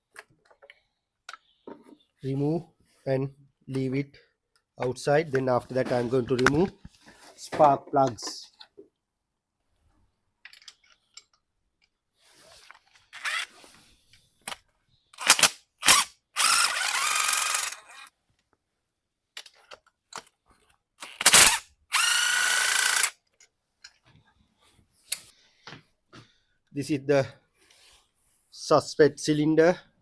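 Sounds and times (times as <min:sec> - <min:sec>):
tools clicking and knocking: 0:10.4 - 0:11.9, 0:19.4 - 0:20.4
cordless power tool spinning: 0:13.2 - 0:13.7, 0:15.2 - 0:18.1, 0:21.0 - 0:23.2.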